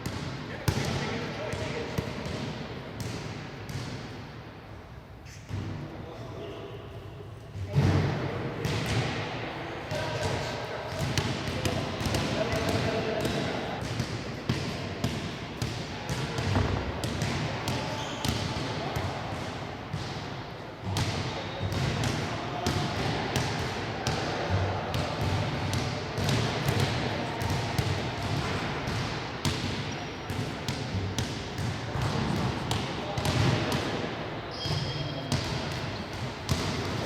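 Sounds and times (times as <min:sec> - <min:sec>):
basketball bouncing on hard court: 0:34.6 - 0:37.0.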